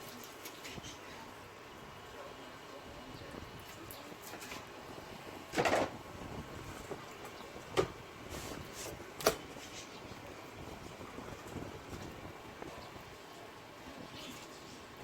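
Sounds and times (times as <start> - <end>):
scraping rustle: 8.2 - 9.0.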